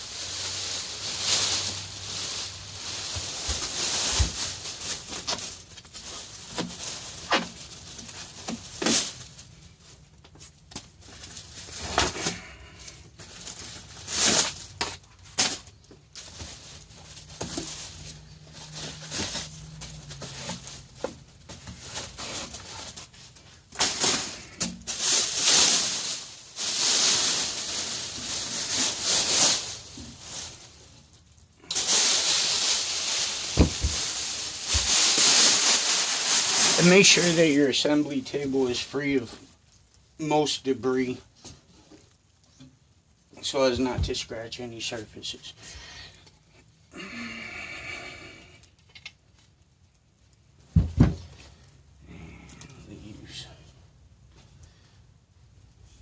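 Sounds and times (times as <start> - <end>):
rustling: 0.0 - 40.0.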